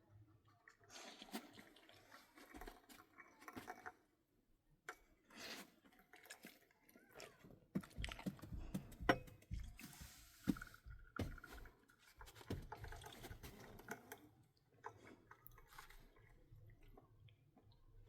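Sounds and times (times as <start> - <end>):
objects knocking and clattering: 7.7 - 14.2.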